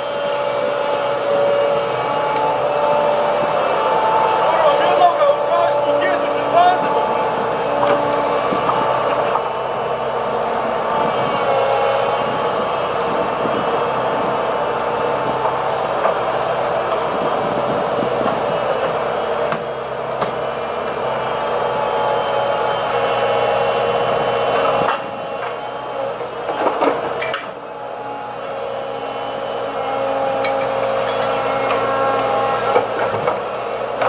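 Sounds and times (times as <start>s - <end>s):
whining tone: 0.0s - 18.7s
diesel machinery running: 0.0s - 34.0s.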